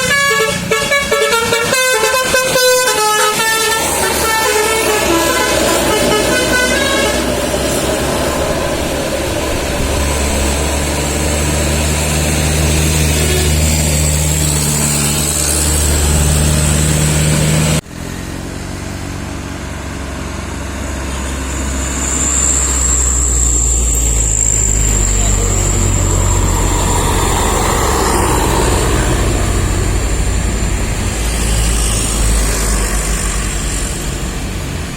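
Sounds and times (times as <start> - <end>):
multi-tone bus horn: 0.0 - 8.2, 12.1 - 17.6
bus diesel engine humming: 0.0 - 34.9.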